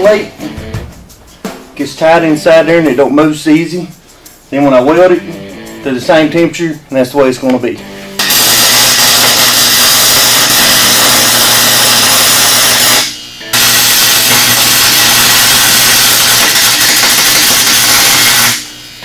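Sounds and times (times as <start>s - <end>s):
welder hissing: 8.0s - 19.0s.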